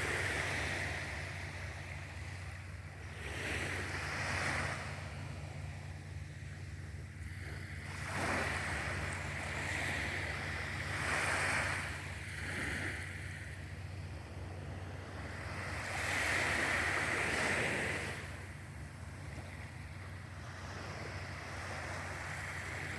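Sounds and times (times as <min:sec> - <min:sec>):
sea waves washing onto shore: 0:00.0 - 0:22.9
steady low rumble: 0:11.8 - 0:22.9.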